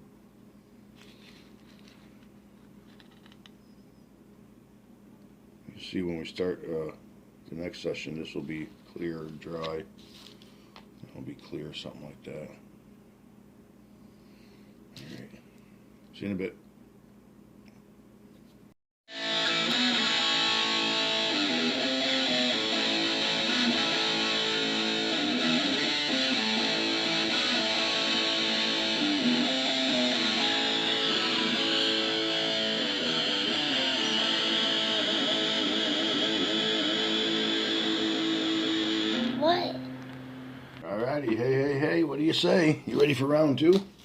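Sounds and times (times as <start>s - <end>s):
guitar music: 19.1s - 40.8s.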